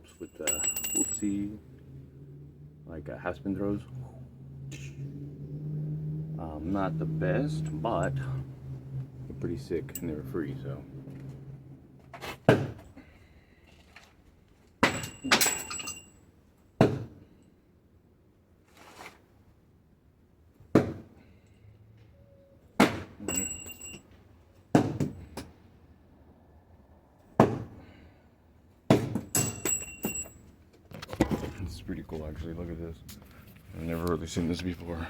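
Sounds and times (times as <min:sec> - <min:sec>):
short metallic ring: 0:00.0 - 0:01.6, 0:14.8 - 0:16.2, 0:23.2 - 0:24.2, 0:29.3 - 0:30.5.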